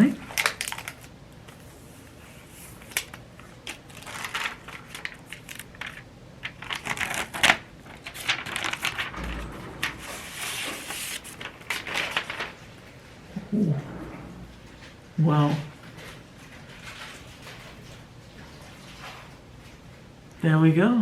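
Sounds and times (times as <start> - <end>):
packaging rustling and crinkling: 0.2 - 1.7, 2.4 - 12.9.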